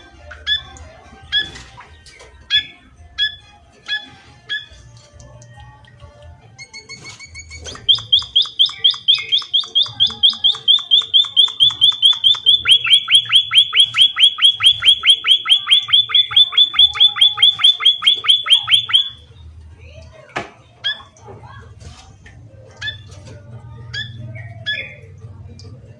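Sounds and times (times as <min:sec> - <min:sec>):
small songbird chirping rapidly: 0:07.6 - 0:19.1.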